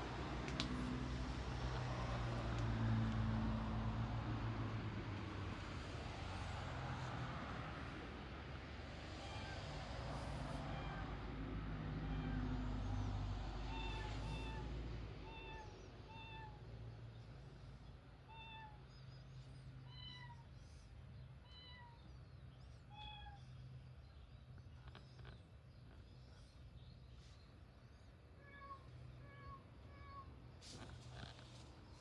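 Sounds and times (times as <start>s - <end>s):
cat meows at different pitches: 9.0s - 9.8s, 10.4s - 11.2s, 13.6s - 16.6s.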